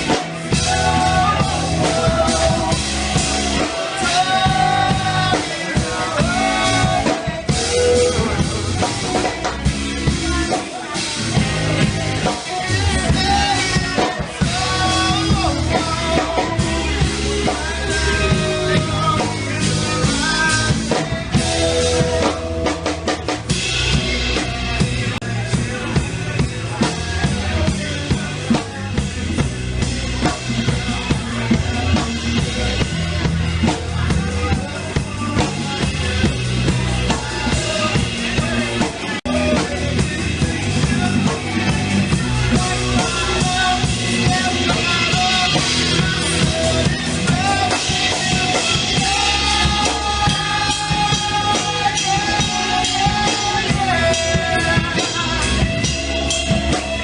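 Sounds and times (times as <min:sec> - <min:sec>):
band playing: 0:00.0 - 0:57.0
drum kit beat: 0:00.0 - 0:57.0.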